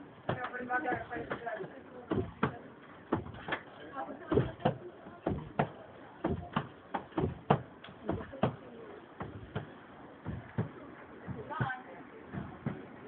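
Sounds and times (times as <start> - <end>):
footsteps of people walking: 9.2 - 12.9.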